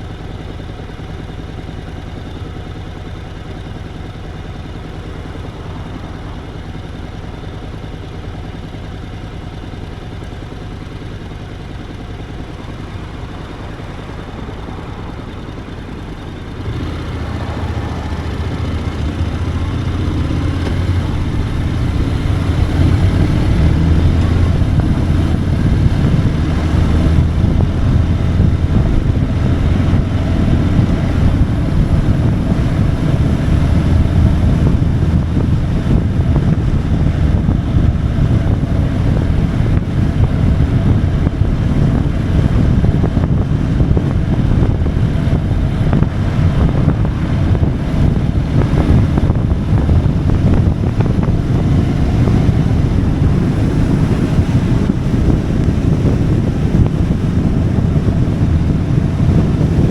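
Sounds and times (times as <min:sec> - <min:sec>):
motorcycle engine running: 0:00.0 - 0:59.9
wind rushing over microphone: 0:16.5 - 0:59.9.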